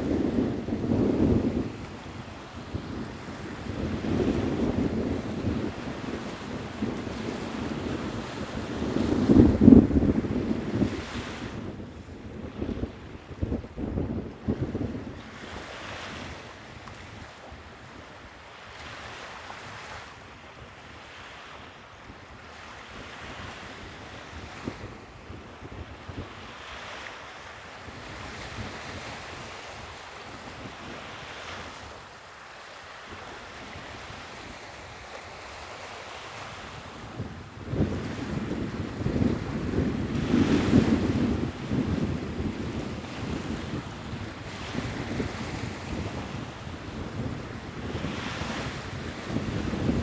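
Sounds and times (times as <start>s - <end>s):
sea waves washing in: 0.0s - 11.9s, 33.0s - 50.0s
wind buffeting microphone: 0.0s - 18.0s, 35.6s - 50.0s.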